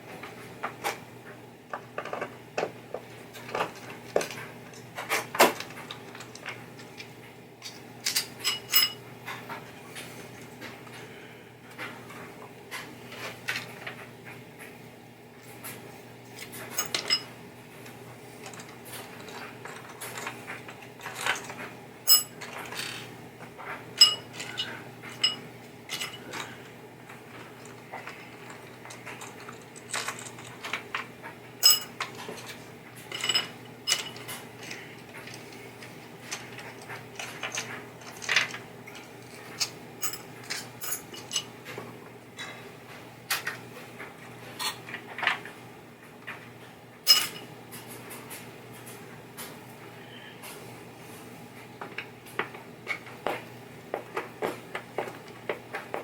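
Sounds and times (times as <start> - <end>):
steady low hum: 0.0 - 56.0
metal parts and tools clinking: 7.6 - 9.0, 16.7 - 17.3, 22.1 - 23.0, 24.0 - 26.3, 31.6 - 32.5, 33.1 - 35.5, 37.2 - 41.5, 47.1 - 47.4.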